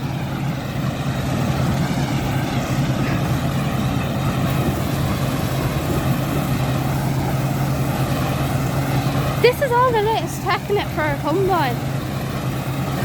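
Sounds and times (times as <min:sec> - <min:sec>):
combine harvester running: 0:00.0 - 0:13.0.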